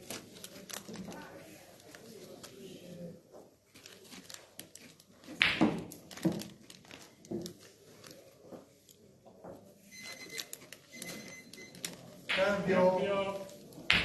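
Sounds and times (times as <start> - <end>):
billiard balls thudding: 5.3 - 6.5.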